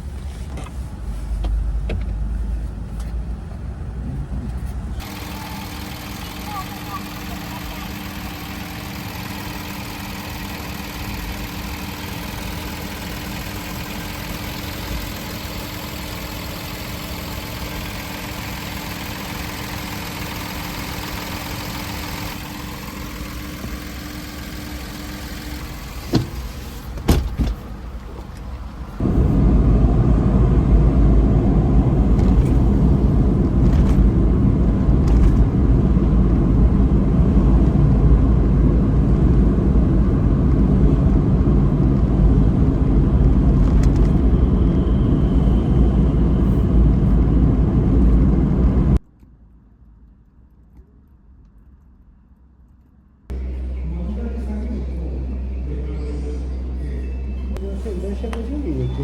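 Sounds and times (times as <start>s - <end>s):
car engine droning: 0.0s - 49.3s, 53.3s - 59.0s
loud low noisy rumble: 28.7s - 49.0s, 53.3s - 59.0s.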